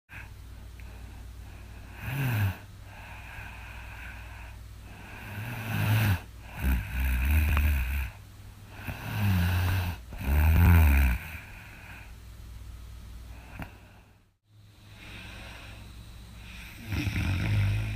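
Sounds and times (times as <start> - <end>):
woman snoring: 1.8 - 12.1, 14.9 - 17.9.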